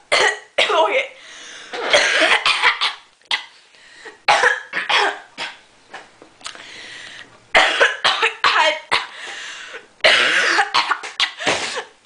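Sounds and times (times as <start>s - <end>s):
person coughing: 1.8s - 3.5s, 4.3s - 5.6s, 7.6s - 9.2s, 10.0s - 12.0s.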